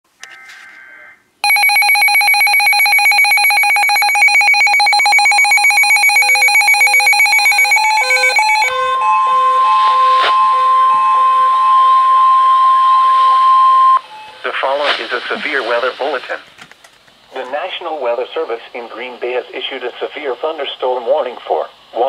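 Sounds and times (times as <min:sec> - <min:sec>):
short beeps: 0:01.4 - 0:08.7
warbling alarm tone: 0:01.4 - 0:14.4
steady high tone: 0:01.4 - 0:14.9.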